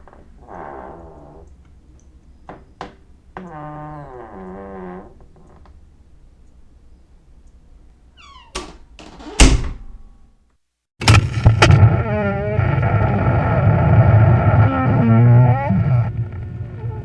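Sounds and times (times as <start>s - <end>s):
door hinge squeaking: 8.2s - 9.8s
door banging shut: 8.2s - 10.0s, 11.0s - 12.0s
door clunk: 8.4s - 10.0s, 11.0s - 11.9s.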